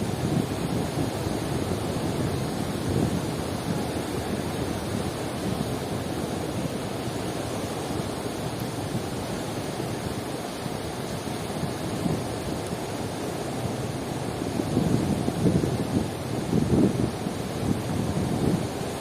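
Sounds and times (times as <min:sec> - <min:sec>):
sea surf washing onto shore: 0:00.0 - 0:19.0.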